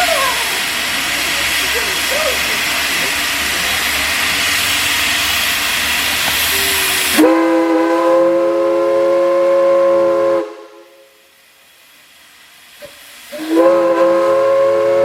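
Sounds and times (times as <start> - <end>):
steam hissing: 0.0 - 15.0
steam whistle chord: 6.5 - 11.3, 13.3 - 15.0.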